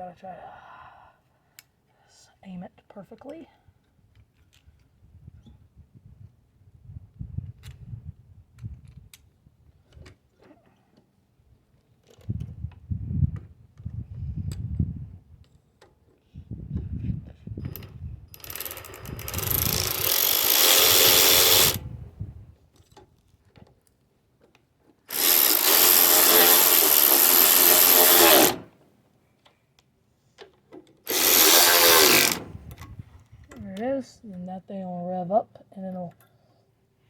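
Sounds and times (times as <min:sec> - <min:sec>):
power drill driving bolts: 0:18.3 - 0:22.0, 0:25.1 - 0:28.8, 0:31.1 - 0:32.9.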